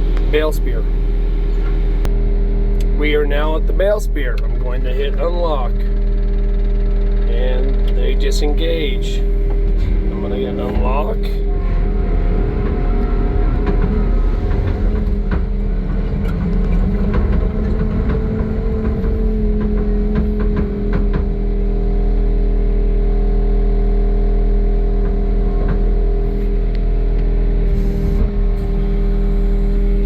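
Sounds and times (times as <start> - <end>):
diesel engine running: 0.0 - 30.0
sharp knocks and clanks: 7.1 - 21.6.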